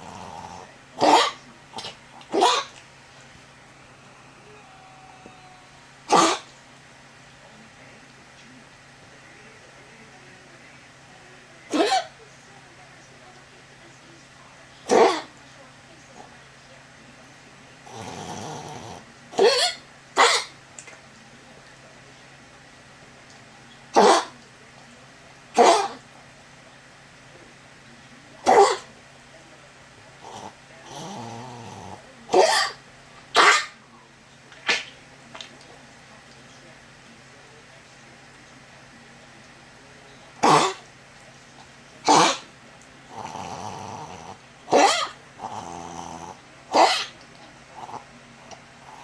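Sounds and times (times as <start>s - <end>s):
dog coughing: 1.0s - 2.8s, 6.1s - 6.6s, 11.7s - 12.2s, 14.8s - 15.3s, 17.9s - 20.6s, 23.9s - 24.4s, 25.6s - 26.0s, 28.4s - 28.9s, 31.8s - 33.8s, 40.4s - 40.9s, 42.0s - 42.5s, 43.9s - 45.6s, 46.7s - 47.2s.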